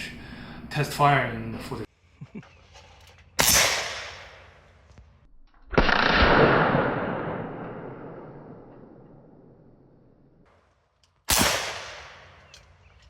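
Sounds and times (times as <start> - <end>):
echoing gunshot rumble: 3.4 - 4.4, 5.7 - 9.9, 11.3 - 12.4
revolver gunshot: 3.4 - 4.6, 5.7 - 9.8, 11.3 - 12.4.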